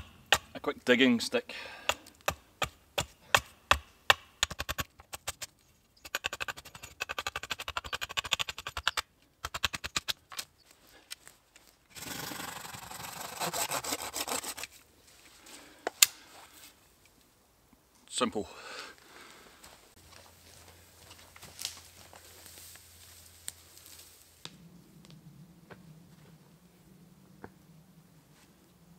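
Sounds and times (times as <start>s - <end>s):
blade scraping wood: 11.9s - 14.8s.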